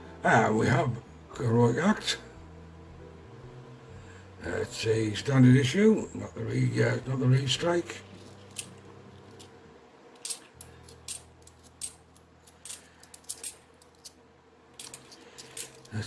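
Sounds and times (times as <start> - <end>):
coins clicking and clinking: 10.2 - 14.2, 14.8 - 16.0.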